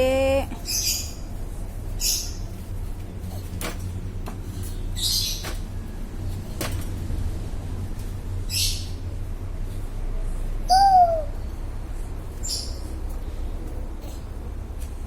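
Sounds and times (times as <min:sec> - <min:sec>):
steady low rumble: 0:05.7 - 0:15.0
bird squawking harshly: 0:10.7 - 0:11.3.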